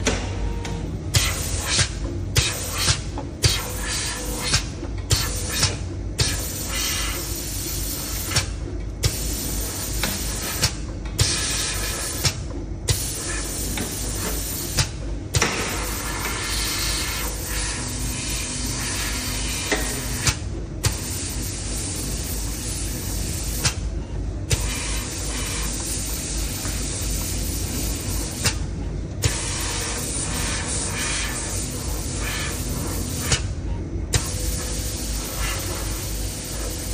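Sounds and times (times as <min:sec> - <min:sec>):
steady low hum: 0:00.0 - 0:36.9.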